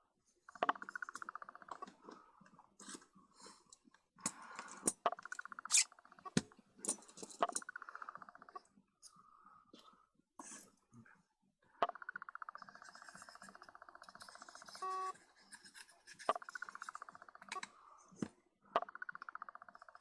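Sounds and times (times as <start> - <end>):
metal parts clicking and knocking: 6.8 - 7.7.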